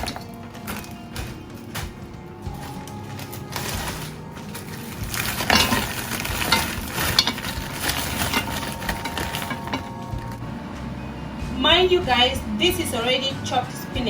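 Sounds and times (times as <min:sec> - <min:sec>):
frozen pieces rustling: 0:00.0 - 0:14.0.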